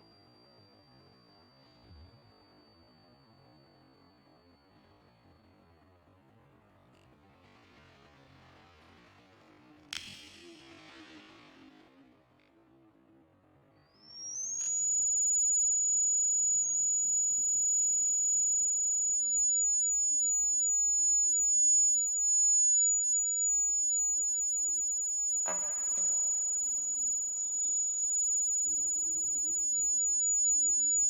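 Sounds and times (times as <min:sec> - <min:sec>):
high-pitched alarm buzzer tone: 0:14.3 - 0:31.0.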